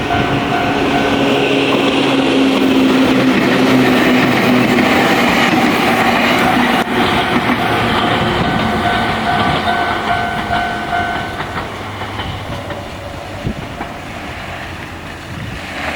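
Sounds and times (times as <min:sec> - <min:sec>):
crossing warning bell ringing: 0:00.0 - 0:13.7
train wheels clacking on rails: 0:00.0 - 0:15.9.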